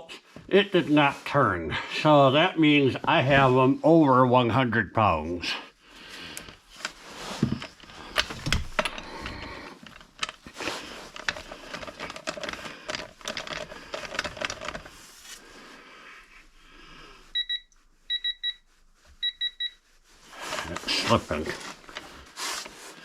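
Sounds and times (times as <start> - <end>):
wrench on metal clicks and scraping: 7.6 - 14.9.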